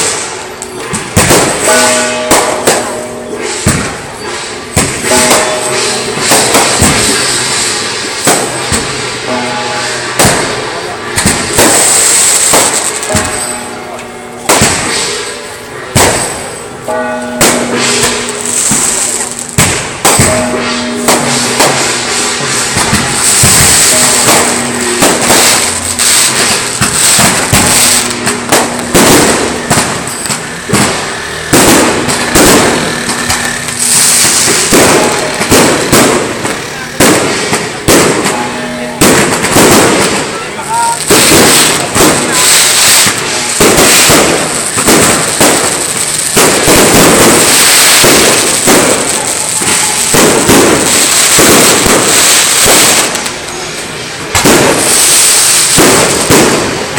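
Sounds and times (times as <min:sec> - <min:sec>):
firecrackers crackling: 0:00.0 - 0:56.9
firework bangs: 0:00.0 - 0:56.9
voices: 0:02.8 - 0:19.6, 0:20.2 - 0:46.6.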